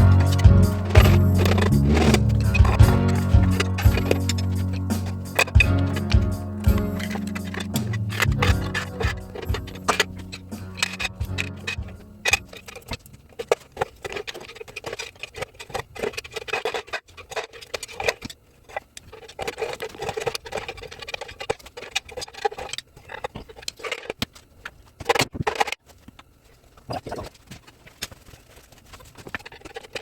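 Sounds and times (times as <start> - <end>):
hand tools knocking on metal: 0.0 - 12.8.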